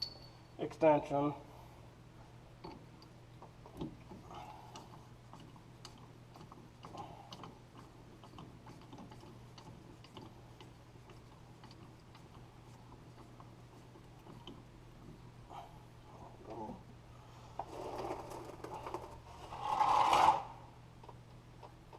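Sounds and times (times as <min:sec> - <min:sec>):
steady low hum: 0:00.0 - 0:21.9
small tools clicking and tapping: 0:02.6 - 0:10.7.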